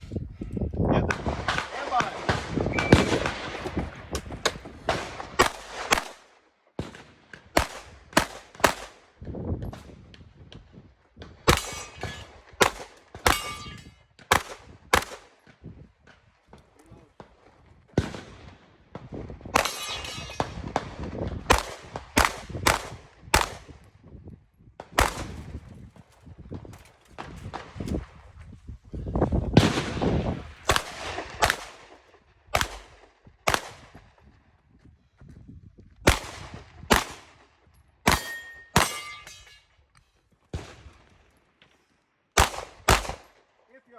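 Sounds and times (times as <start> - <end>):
pistol shots: 1.1 - 9.0, 11.4 - 15.3, 19.5 - 23.7, 24.9 - 25.4, 29.6 - 34.0, 36.1 - 39.4, 42.4 - 43.4
steel target ringing: 11.5 - 12.3, 13.3 - 14.0, 19.6 - 20.5, 38.1 - 39.7.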